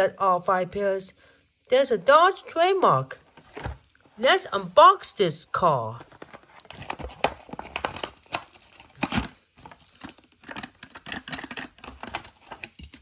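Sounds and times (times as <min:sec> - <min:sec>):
card tearing: 0:06.0 - 0:12.8
plastic crinkling: 0:06.0 - 0:13.0.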